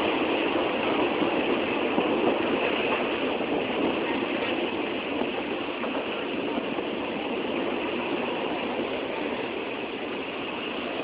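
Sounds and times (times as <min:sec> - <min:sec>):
train wheels on rails: 0:00.0 - 0:11.0.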